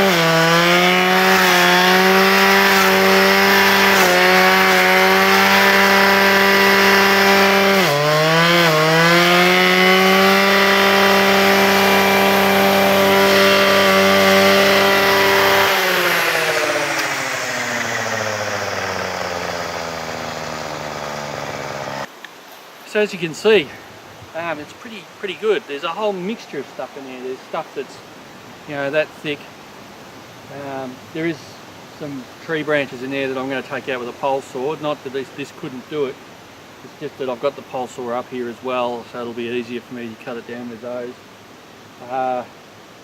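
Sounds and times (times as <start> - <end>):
brushcutter engine running: 0.0 - 22.1.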